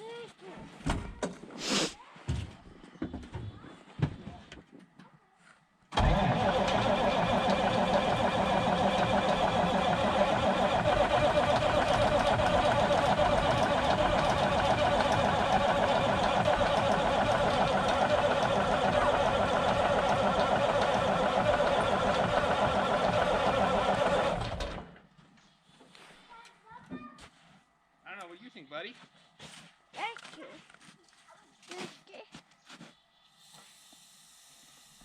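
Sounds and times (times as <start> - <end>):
diesel engine cranking and firing: 5.9 - 25.1.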